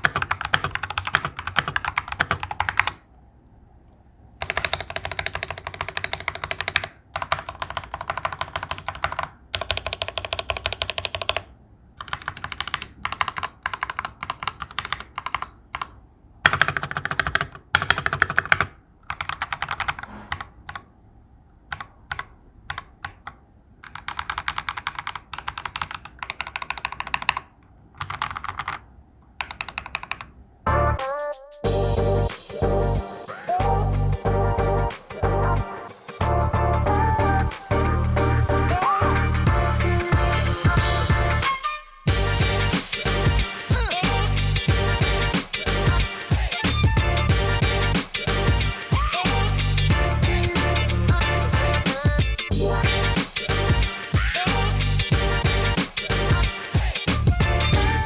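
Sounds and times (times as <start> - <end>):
mechanical keyboard typing: 0.0 - 3.0, 4.4 - 20.9, 21.7 - 30.4
background music with a beat: 30.7 - 58.0.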